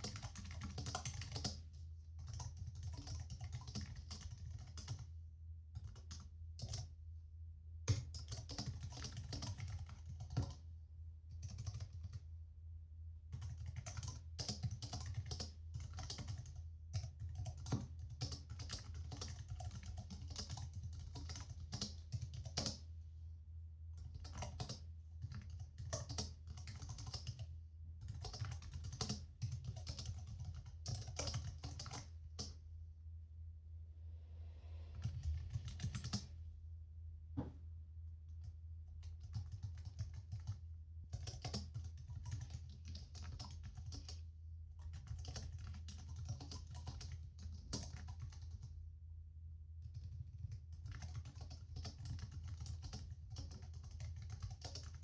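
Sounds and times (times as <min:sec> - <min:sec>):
computer keyboard typing: 0:00.0 - 0:05.1, 0:05.8 - 0:06.9, 0:07.9 - 0:10.6, 0:11.3 - 0:12.2, 0:13.3 - 0:22.8, 0:24.0 - 0:32.6, 0:35.0 - 0:36.3, 0:39.0 - 0:44.2, 0:44.8 - 0:48.7, 0:49.8 - 0:55.0
steady low hum: 0:19.3 - 0:41.3.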